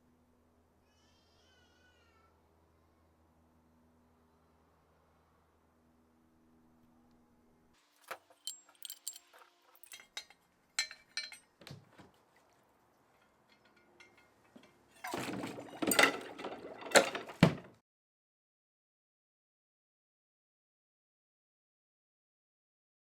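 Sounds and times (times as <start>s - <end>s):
metal rattling and scraping: 8.0s - 11.8s, 13.2s - 17.7s
small metal parts clinking: 8.0s - 11.8s, 13.2s - 17.5s.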